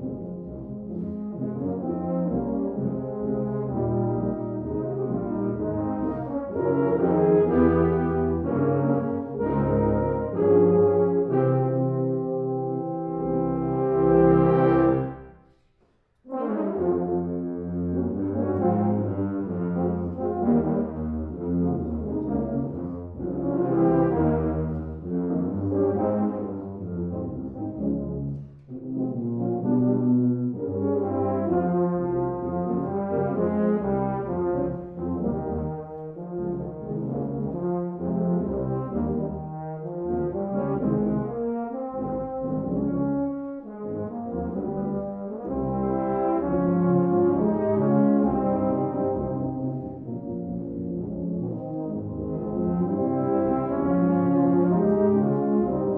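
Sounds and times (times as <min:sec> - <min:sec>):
tuba and euphonium quartet playing: 0:00.0 - 0:15.4, 0:16.2 - 0:55.9.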